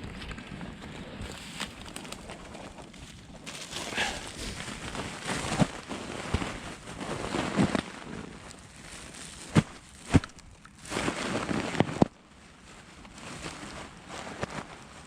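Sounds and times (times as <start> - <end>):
footsteps squelching through marsh: 0.1 - 6.7.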